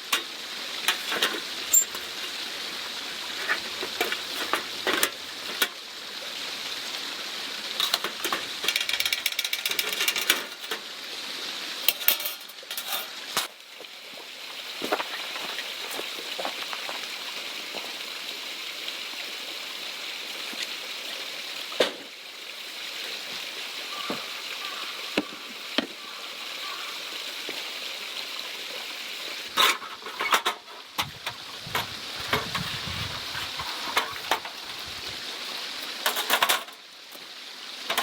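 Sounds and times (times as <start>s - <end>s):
steady hiss: 0.0s - 25.6s, 27.3s - 38.0s
gear rattling and clatter: 31.0s - 35.2s.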